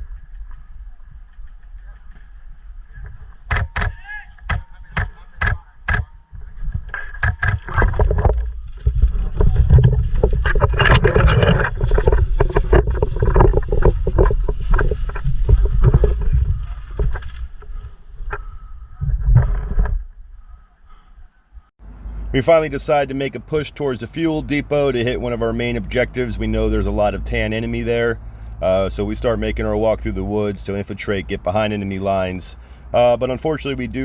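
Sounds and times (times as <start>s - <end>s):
loud rustling and knocking: 3.0s - 20.1s
sharp airsoft gun shots: 3.5s - 6.2s.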